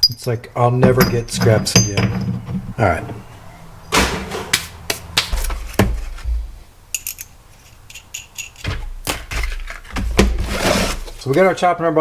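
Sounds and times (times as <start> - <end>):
steel pieces clanking: 0.0 - 3.3, 6.9 - 9.9
light metallic clinks: 6.9 - 8.7.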